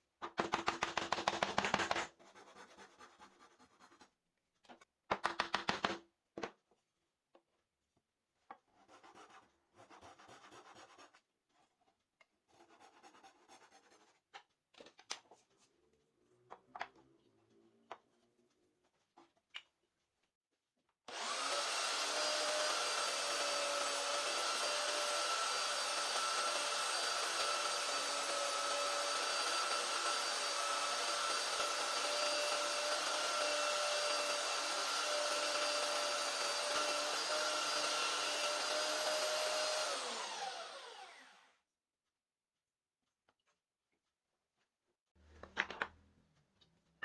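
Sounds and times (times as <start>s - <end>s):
power tool motor whining: 21.1s - 41.5s.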